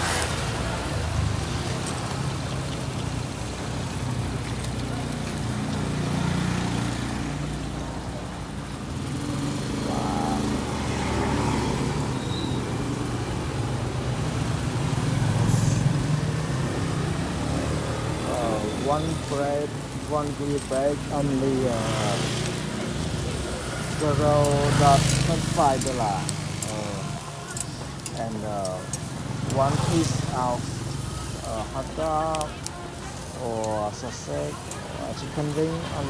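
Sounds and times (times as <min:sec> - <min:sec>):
motorbike and car engines passing: 0:00.0 - 0:36.0
traffic hum: 0:00.0 - 0:36.0
background voices: 0:09.6 - 0:12.2, 0:13.3 - 0:36.0.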